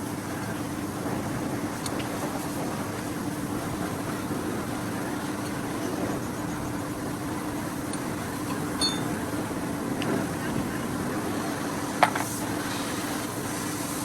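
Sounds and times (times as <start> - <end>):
sharp metallic clink: 8.8 - 9.2.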